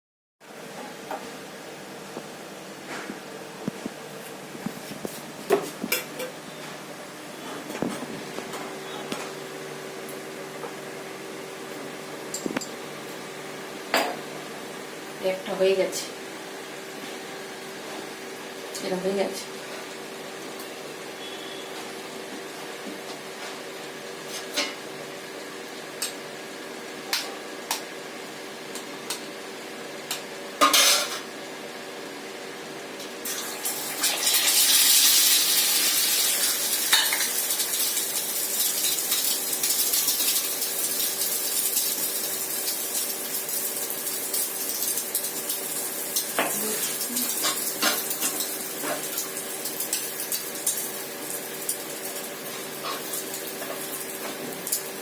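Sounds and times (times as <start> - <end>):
egg sizzling in a pan: 33.2 - 55.0.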